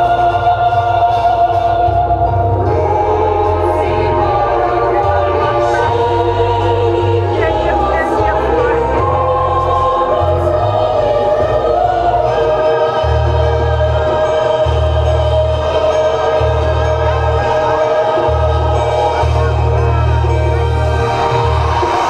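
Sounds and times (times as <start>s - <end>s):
choir singing sustained chords: 0.0s - 22.0s
deep bass notes: 0.0s - 22.0s.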